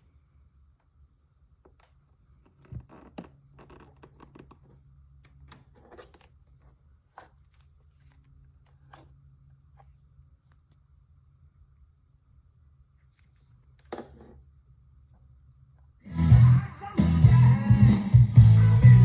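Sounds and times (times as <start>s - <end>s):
speaker hum and static: 0.0s - 19.0s
clicks and scraping handling noise: 2.4s - 9.2s.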